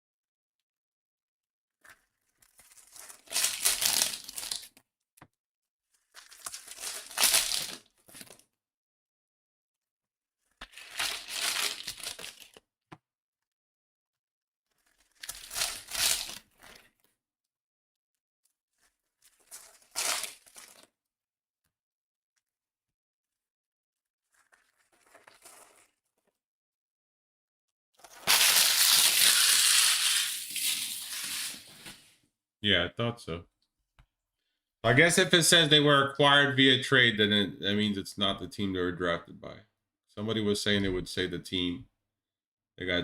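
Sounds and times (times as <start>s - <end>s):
card pack wrappers ripping: 2.5s - 4.7s, 6.2s - 8.4s, 10.6s - 12.6s, 15.0s - 16.8s, 19.4s - 20.9s, 28.0s - 32.1s.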